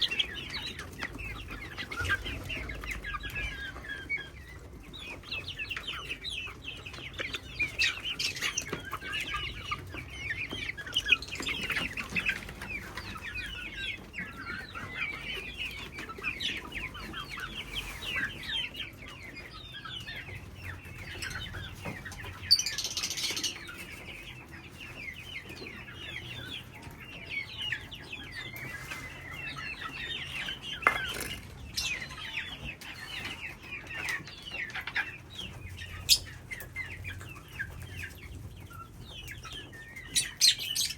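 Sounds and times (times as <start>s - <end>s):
parrots chirping and squawking: 21.1s - 23.7s, 29.6s - 36.6s, 40.1s - 40.9s.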